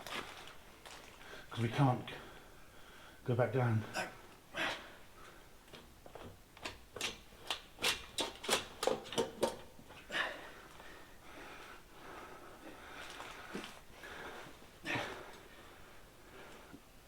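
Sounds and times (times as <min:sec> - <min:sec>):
hand tools clicking and knocking: 0:05.7 - 0:09.9.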